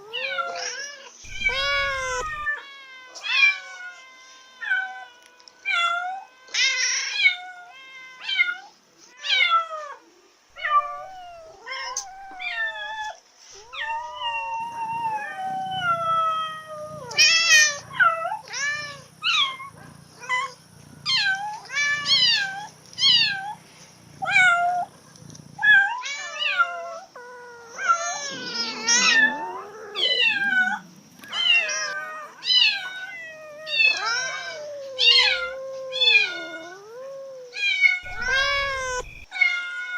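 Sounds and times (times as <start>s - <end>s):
cats meowing: 0.0s - 39.9s
low regular pulsing: 38.1s - 39.3s.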